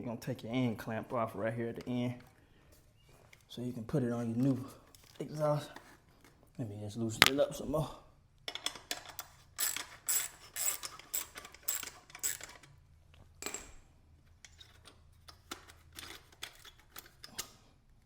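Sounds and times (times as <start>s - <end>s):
ratchet wrench clicking: 9.6s - 12.6s.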